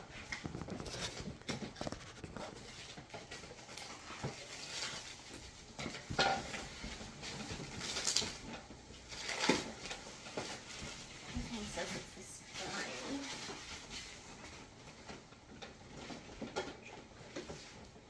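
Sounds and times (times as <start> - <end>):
cardboard packaging rustling: 0.0 - 18.0.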